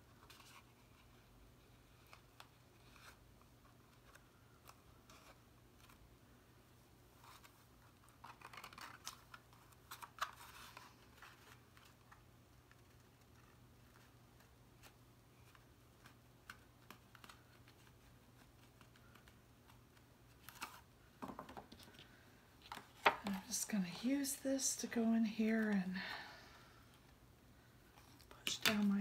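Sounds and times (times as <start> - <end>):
paper rustling: 7.2 - 20.9.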